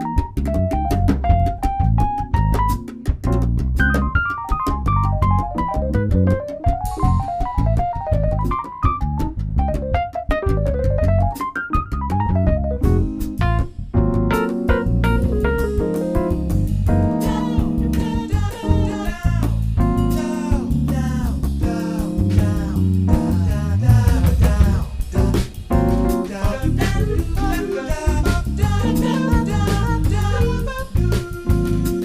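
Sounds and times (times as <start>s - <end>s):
bass guitar: 0.0s - 32.0s
electric guitar: 0.0s - 32.0s
soul-jazz band instrumental: 0.0s - 32.0s.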